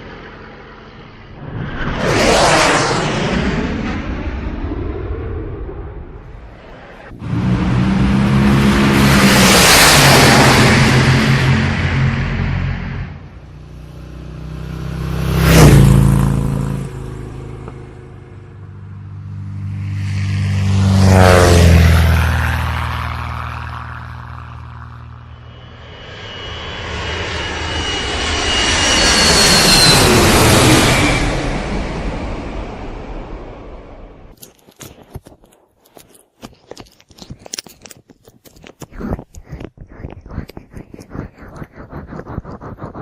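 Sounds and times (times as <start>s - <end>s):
high whine: 0.0s - 34.3s, 38.7s - 43.0s
aircraft flying past: 0.0s - 34.4s, 39.4s - 43.0s.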